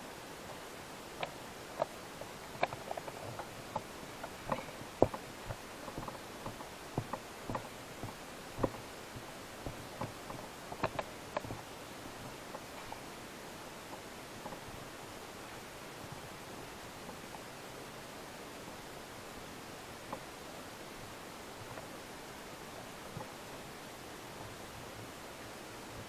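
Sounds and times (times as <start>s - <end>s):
steady hiss: 0.0s - 26.0s
light clicks and taps: 1.2s - 13.1s.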